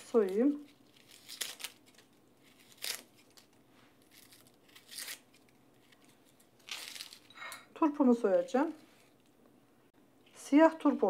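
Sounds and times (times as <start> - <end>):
onion skin tearing: 0.0 - 7.3.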